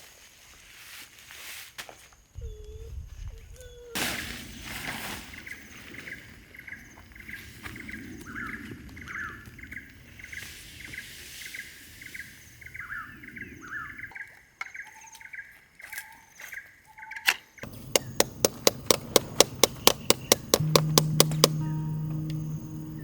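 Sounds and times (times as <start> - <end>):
sharp click: 17.6 - 22.4
bird chirping call: 17.6 - 23.0
fast rhythmic music: 18.0 - 23.0
steady low note: 20.4 - 23.0.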